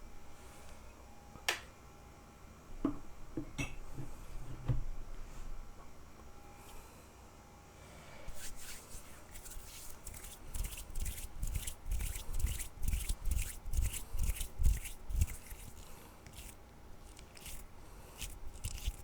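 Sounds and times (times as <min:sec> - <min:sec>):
hands rubbing and rustling: 0:08.3 - 0:19.0.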